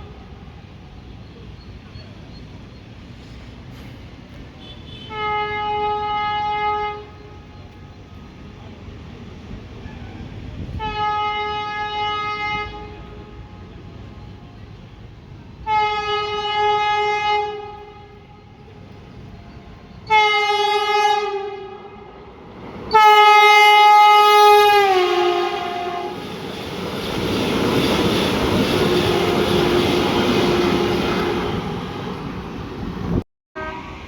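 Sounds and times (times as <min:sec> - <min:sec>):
train coaches rumbling and clattering: 0:00.0 - 0:06.2, 0:07.0 - 0:33.2
locomotive horn blasts: 0:04.6 - 0:08.2, 0:10.7 - 0:13.7, 0:15.6 - 0:18.6, 0:20.0 - 0:22.2, 0:22.9 - 0:26.2, 0:28.8 - 0:32.0, 0:33.6 - 0:34.0.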